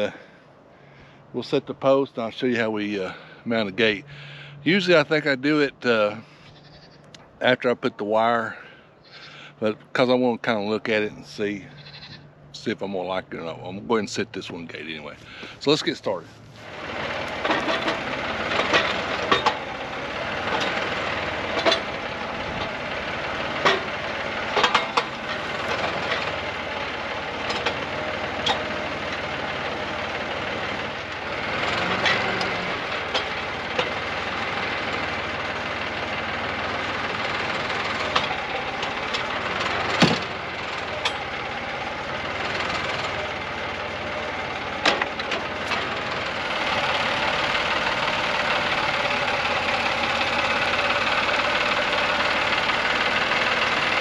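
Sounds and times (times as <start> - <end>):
post hole digger motor running: 11.8 - 12.1, 16.4 - 54.0.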